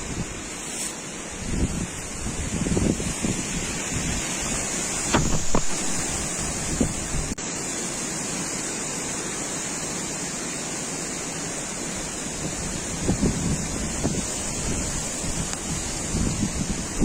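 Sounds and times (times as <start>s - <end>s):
wind blowing across microphone: 0.0s - 7.4s, 12.0s - 17.0s.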